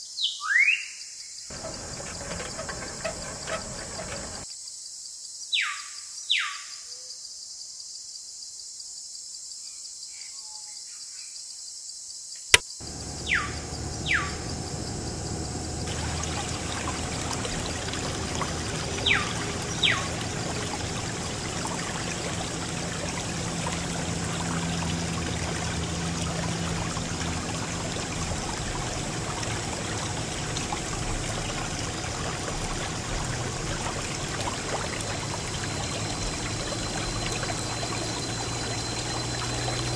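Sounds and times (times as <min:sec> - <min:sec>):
water pump click: 0:01.5 - 0:04.4, 0:12.8 - 0:39.9
water pouring and splashing: 0:01.5 - 0:04.5, 0:12.8 - 0:39.9.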